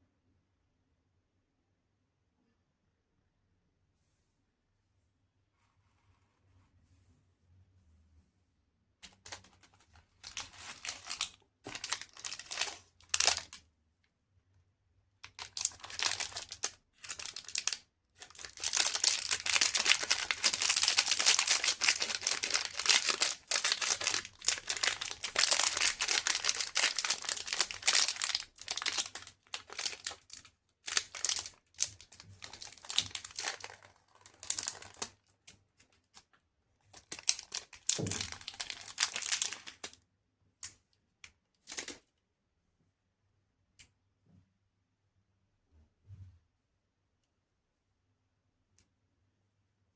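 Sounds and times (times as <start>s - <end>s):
wrapper crinkling and tearing: 9.2s - 13.6s, 15.2s - 36.2s, 36.8s - 40.0s, 41.7s - 42.0s.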